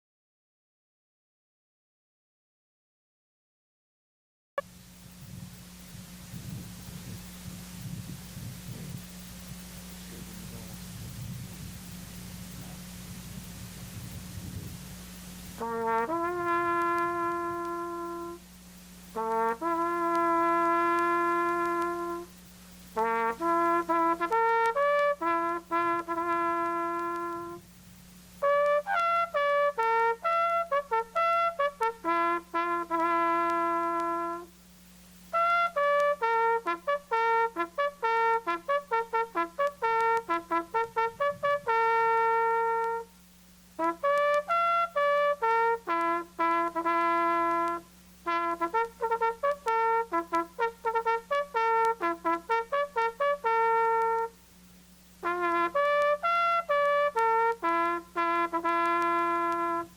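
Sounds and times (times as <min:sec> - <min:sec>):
trumpet playing bugle call: 0:06.3 - 0:27.7, 0:28.3 - 0:34.6, 0:35.2 - 0:43.2, 0:43.8 - 0:54.4, 0:55.2 - 0:59.9.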